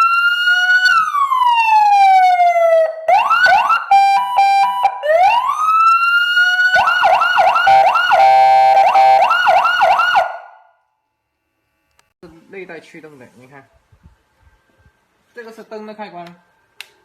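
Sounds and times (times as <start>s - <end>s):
electronic police siren: 0.0s - 10.7s.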